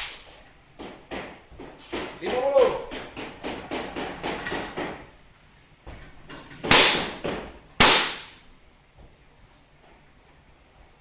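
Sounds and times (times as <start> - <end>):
gunshots echoing: 6.7 - 7.2, 7.8 - 8.4.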